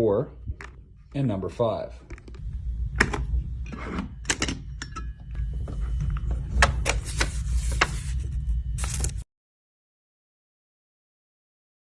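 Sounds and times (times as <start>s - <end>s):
low steady rumble: 0.0s - 9.2s.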